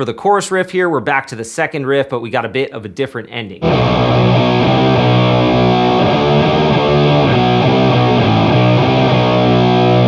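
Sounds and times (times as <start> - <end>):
distorted electric guitar riff: 3.6 - 10.0.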